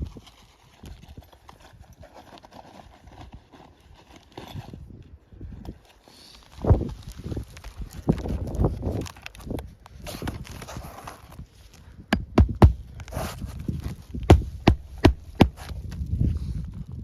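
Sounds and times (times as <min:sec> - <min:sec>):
hammer striking nails: 0:12.2 - 0:12.8.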